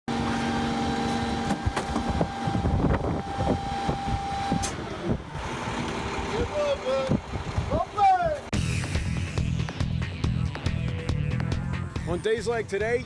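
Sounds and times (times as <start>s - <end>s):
steady mechanical hum: 0.1s - 8.5s
wind buffeting microphone: 1.6s - 5.5s.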